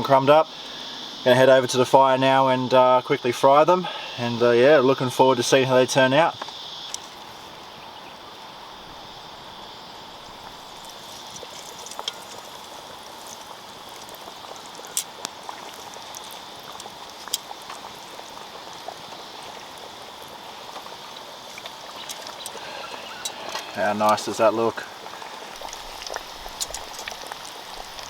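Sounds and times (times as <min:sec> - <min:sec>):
food sizzling in oil: 0:06.4 - 0:28.0
oil popping: 0:06.4 - 0:28.0.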